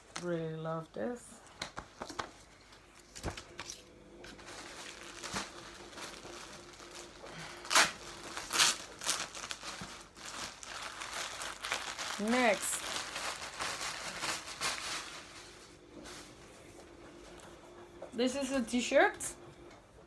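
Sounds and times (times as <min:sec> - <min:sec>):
plastic wrapping crinkling: 0:01.6 - 0:16.4.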